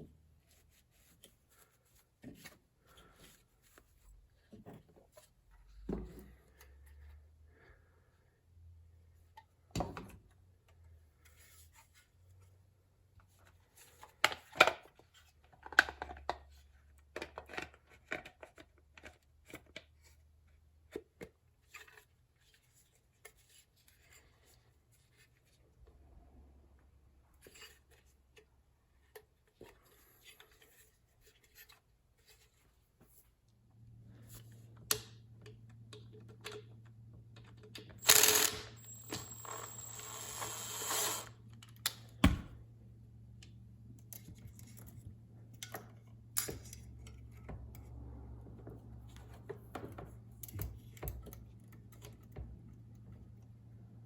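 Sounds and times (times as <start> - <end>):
tools clicking and scraping: 37.4 - 42.1.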